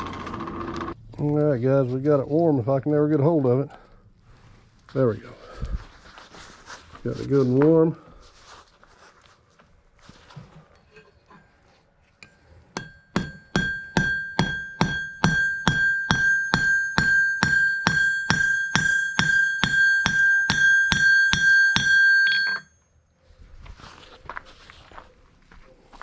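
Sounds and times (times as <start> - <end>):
hammer striking metal on anvil: 12.2 - 22.7
anvil ringing: 12.2 - 22.8.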